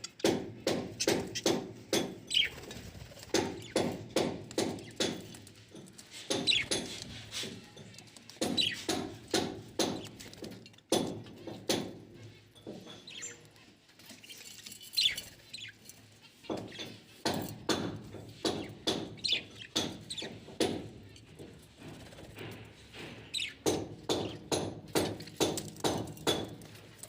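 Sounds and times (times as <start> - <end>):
beak knocks pecking: 0.2 - 2.5, 3.2 - 7.6, 8.3 - 12.1, 16.5 - 27.0.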